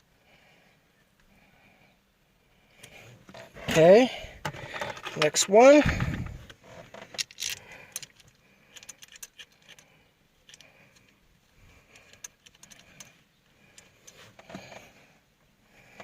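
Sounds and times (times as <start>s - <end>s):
metal bolts clicking and clinking: 7.0s - 11.1s, 11.9s - 14.2s.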